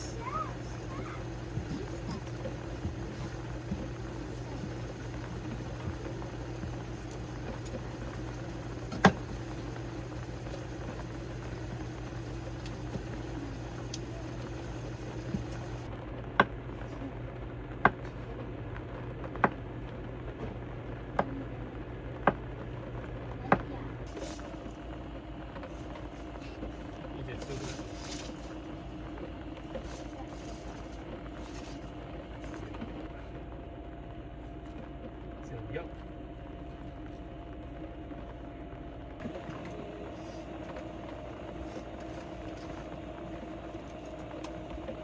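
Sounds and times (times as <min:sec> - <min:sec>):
low hum: 0:00.0 - 0:15.9
rain on a vehicle roof: 0:00.0 - 0:21.7, 0:23.7 - 0:33.2, 0:39.2 - 0:45.0.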